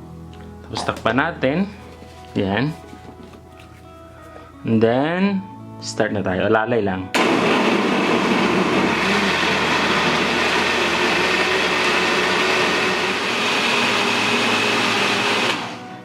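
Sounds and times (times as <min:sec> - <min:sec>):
electric blender running: 0:07.2 - 0:16.0.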